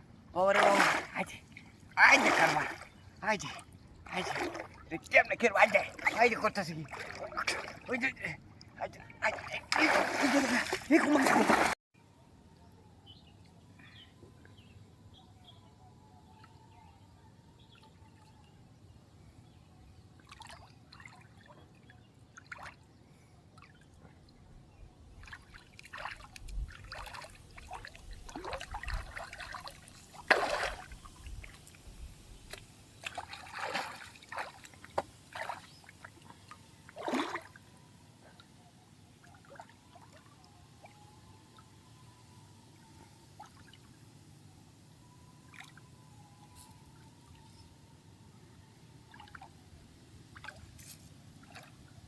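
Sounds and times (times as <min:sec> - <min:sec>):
water splashing and sloshing: 0:00.4 - 0:11.8, 0:20.2 - 0:22.9, 0:25.1 - 0:38.5, 0:39.2 - 0:41.0, 0:42.8 - 0:44.0, 0:45.4 - 0:45.8, 0:49.1 - 0:49.7, 0:50.3 - 0:52.0.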